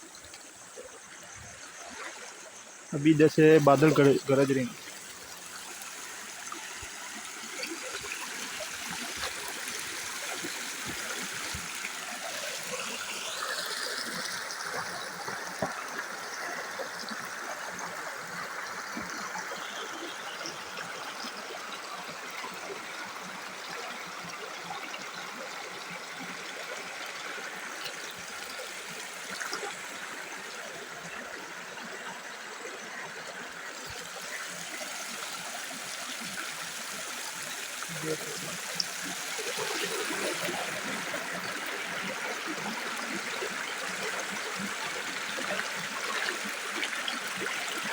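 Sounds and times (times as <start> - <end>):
stream rushing: 2.9 - 13.1, 31.6 - 47.9.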